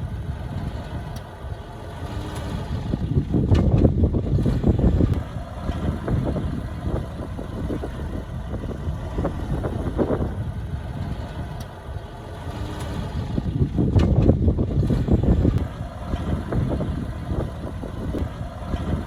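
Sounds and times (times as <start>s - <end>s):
heavy machinery diesel engine running: 0.0s - 19.0s.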